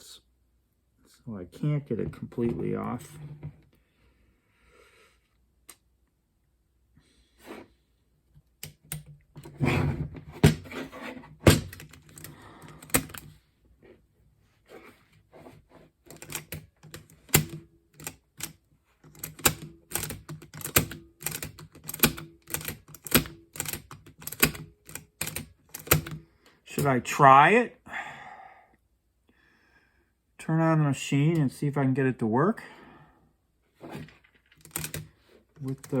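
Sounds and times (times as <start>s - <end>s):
small mechanical parts clicking: 16.1s - 26.2s, 34.5s - 36.0s.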